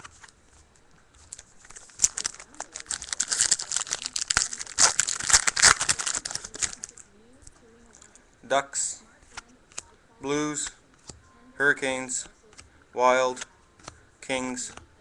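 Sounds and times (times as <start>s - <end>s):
wrapper tearing and crinkling: 1.3s - 7.0s.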